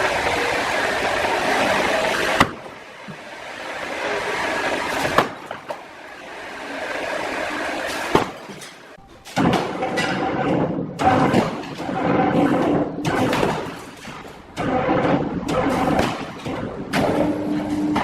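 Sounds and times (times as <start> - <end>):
steady machine whine: 0.0 - 5.1
wood-sawing machinery running: 0.0 - 9.0
knocks and clanks of wood and metal: 4.9 - 6.0, 7.9 - 18.0.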